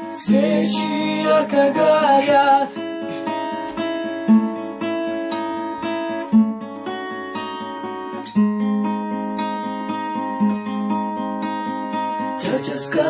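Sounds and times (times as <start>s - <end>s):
acoustic guitar strumming: 0.0s - 13.0s.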